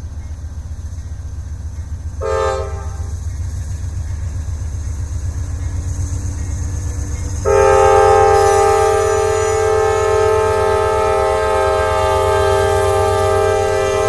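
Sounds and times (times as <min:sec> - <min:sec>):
diesel locomotive engines under load: 0:00.0 - 0:14.0
locomotive horn chord: 0:02.2 - 0:03.1, 0:07.4 - 0:14.0.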